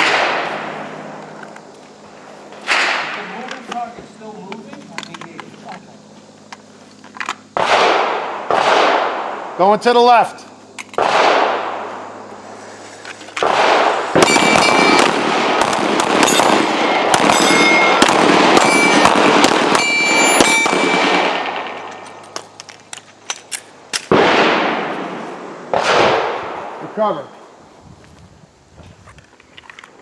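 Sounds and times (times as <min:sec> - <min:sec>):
handgun shots: 0:13.4 - 0:22.6.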